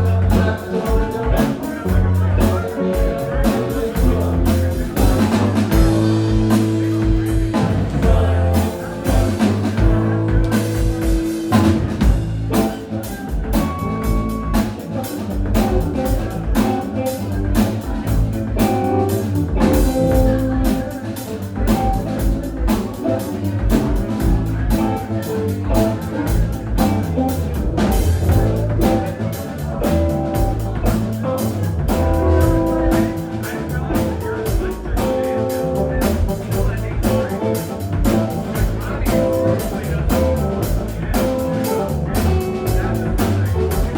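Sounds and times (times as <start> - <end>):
live band playing instrumental: 0.0 - 43.9
steady drum beat: 0.0 - 43.9.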